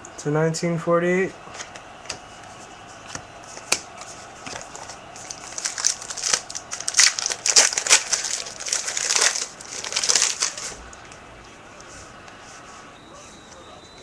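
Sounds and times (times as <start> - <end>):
card pack wrapper crinkling: 4.5 - 10.8.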